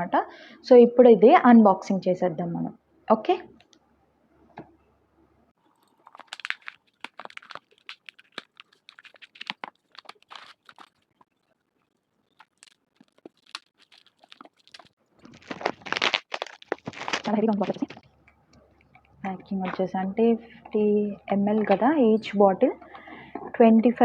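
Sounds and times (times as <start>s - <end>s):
packaging crinkling: 5.6s - 18.1s.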